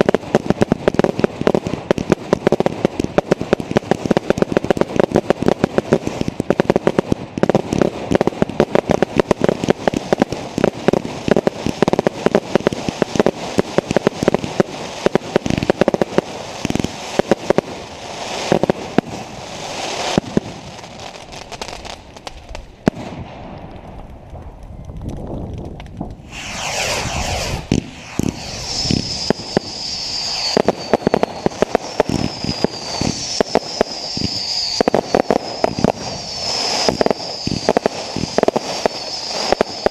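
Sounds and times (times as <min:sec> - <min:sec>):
firework whistles: 0:00.0 - 0:22.0, 0:26.2 - 0:39.9
fireworks crackling bangs: 0:00.0 - 0:39.9
falling firework whistle: 0:26.2 - 0:39.9.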